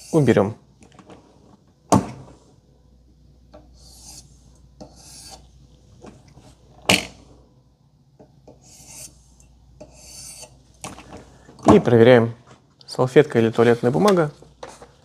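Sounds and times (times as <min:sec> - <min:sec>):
knife rasping along wooden stick: 0:03.8 - 0:05.4, 0:08.6 - 0:09.2, 0:09.8 - 0:10.6.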